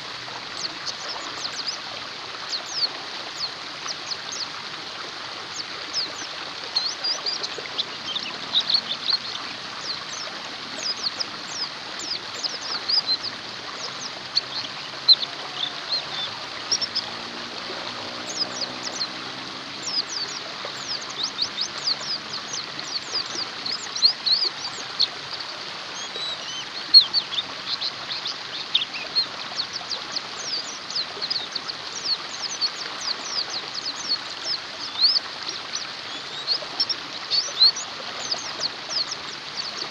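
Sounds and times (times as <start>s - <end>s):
running water: 0.0s - 39.9s
birds chirping: 5.4s - 39.9s.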